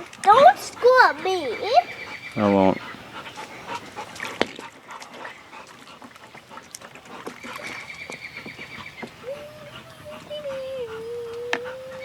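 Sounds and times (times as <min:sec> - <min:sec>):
dog splashing in puddle: 0:03.4 - 0:11.8.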